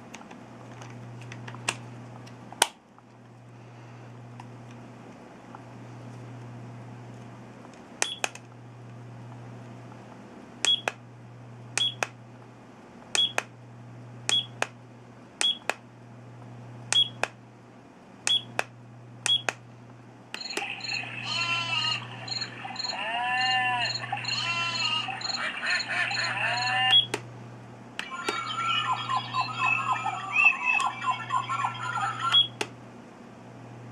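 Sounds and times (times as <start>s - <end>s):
alarm clock button beeps: 14.3s - 14.6s, 19.3s - 19.5s, 20.4s - 27.2s, 28.0s - 32.6s
nature sounds from small speaker: 20.4s - 27.1s, 28.0s - 32.6s.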